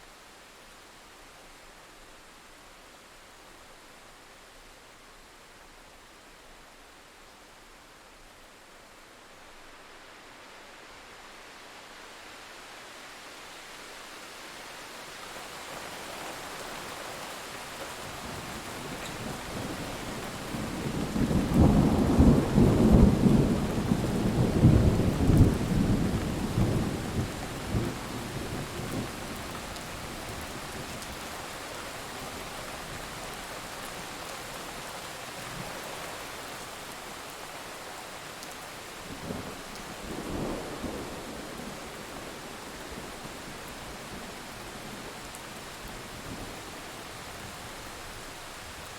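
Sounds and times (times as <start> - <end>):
steady rain: 0.0 - 48.9
thunder rumbling: 20.7 - 29.2.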